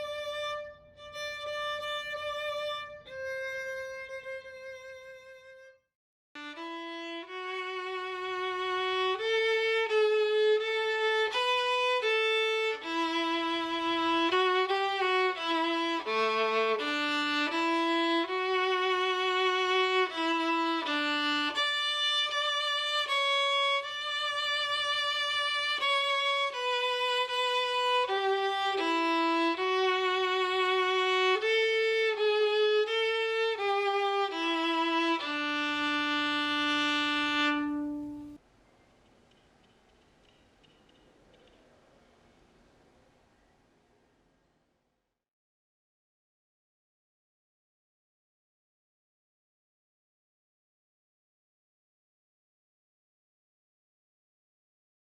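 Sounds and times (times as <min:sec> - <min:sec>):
violin slow melody: 0:00.0 - 0:38.4.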